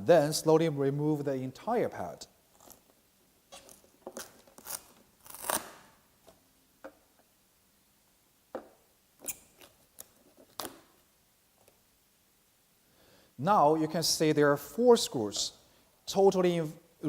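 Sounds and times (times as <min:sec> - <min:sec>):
pad being pried and peeled off: 0:03.5 - 0:06.0.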